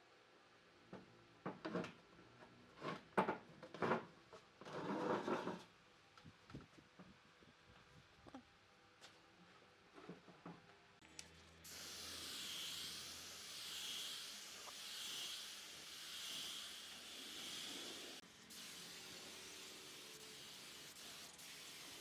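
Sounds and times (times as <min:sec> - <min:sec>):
compressed air hissing: 0:11.7 - 0:22.0.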